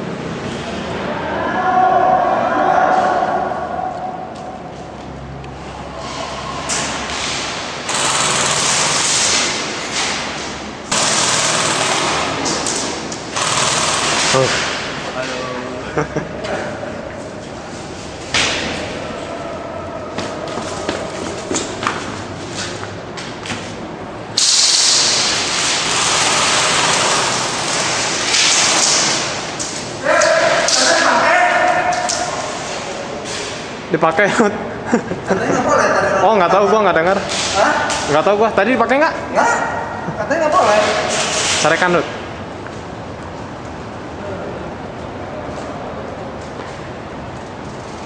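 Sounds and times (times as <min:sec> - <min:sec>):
airsoft guns firing full-auto bursts: 0:07.9 - 0:09.4, 0:10.9 - 0:12.5, 0:13.3 - 0:14.4, 0:24.9 - 0:28.0
loud steady hiss: 0:24.2 - 0:30.0.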